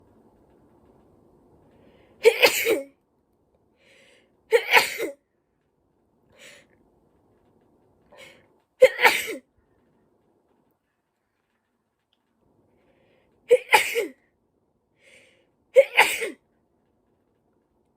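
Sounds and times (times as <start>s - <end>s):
person sneezing: 2.2s - 2.9s, 4.5s - 5.2s, 8.8s - 9.4s, 13.5s - 14.2s, 15.8s - 16.4s.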